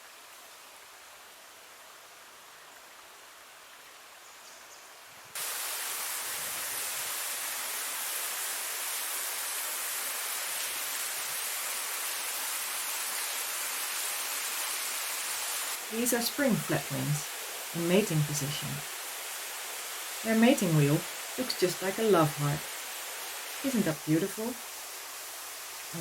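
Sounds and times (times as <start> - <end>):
creek running over rocks: 5.4 - 26.0.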